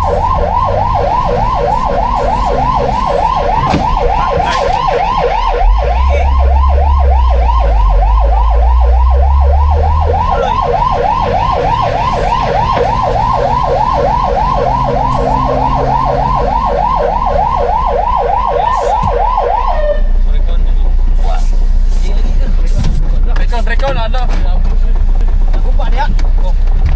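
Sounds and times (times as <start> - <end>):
fire truck siren yelping: 0.0 - 20.2
low engine rumble: 0.0 - 26.9.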